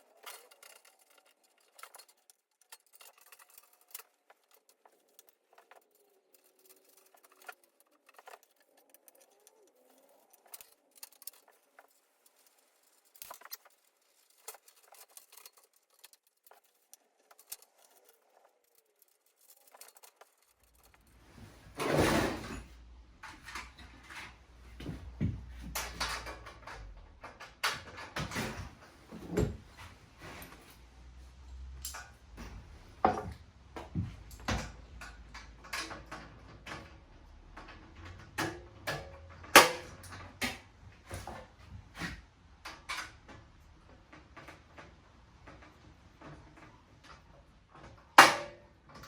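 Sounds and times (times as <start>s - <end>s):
parts scraping: 0.0s - 42.3s
knocks of parts being handled: 31.8s - 36.9s.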